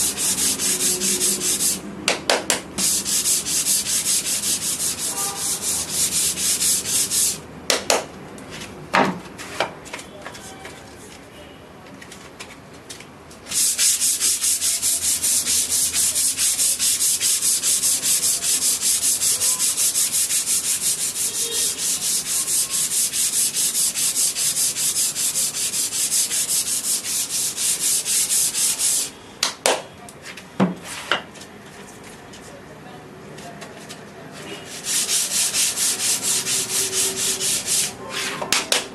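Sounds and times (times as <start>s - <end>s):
sandpaper sanding by hand: 0.0s - 1.8s, 2.8s - 7.4s, 13.5s - 29.2s, 34.7s - 38.5s.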